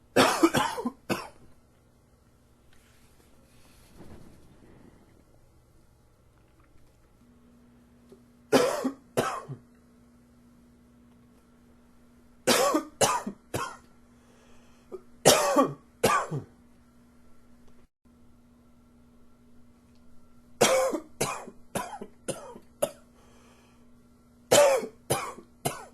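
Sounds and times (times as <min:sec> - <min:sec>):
man coughing: 0:00.2 - 0:01.4, 0:08.5 - 0:09.6, 0:12.5 - 0:13.8, 0:15.2 - 0:16.5, 0:20.6 - 0:23.0, 0:24.5 - 0:25.9.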